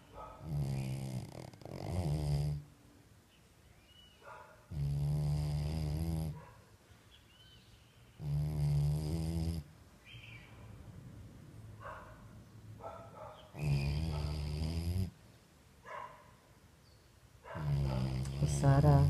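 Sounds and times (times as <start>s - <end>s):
loud snoring: 0.4s - 2.6s, 4.7s - 6.4s, 8.2s - 9.6s, 13.6s - 15.2s, 17.6s - 18.6s.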